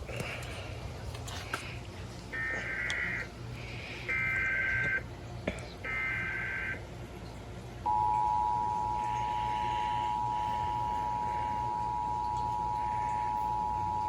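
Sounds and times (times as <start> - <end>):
steady warning alert tone: 7.9 - 14.0
warbling digital header tones: 7.9 - 14.0.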